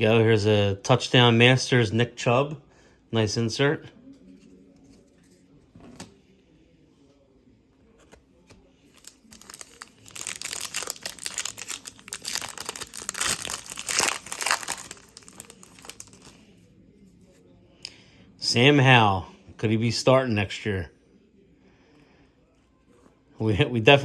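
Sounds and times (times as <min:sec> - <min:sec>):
foil wrapper crinkling and tearing: 0:08.9 - 0:16.4.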